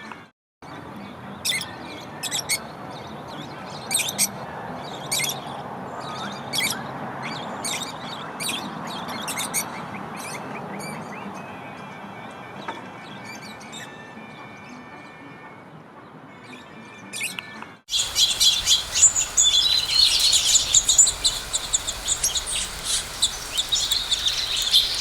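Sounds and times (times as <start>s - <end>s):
songbirds chirping: 17.9s - 25.0s
steady background hiss: 17.9s - 25.0s.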